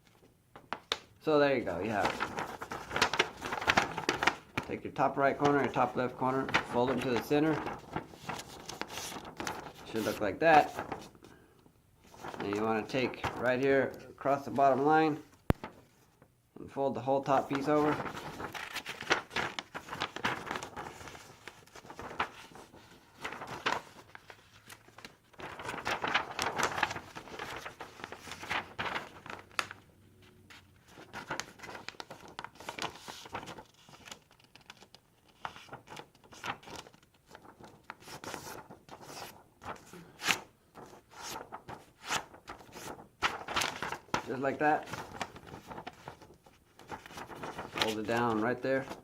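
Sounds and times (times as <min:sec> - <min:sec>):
paper crinkling and rustling: 0:00.0 - 0:16.2, 0:17.2 - 0:49.0.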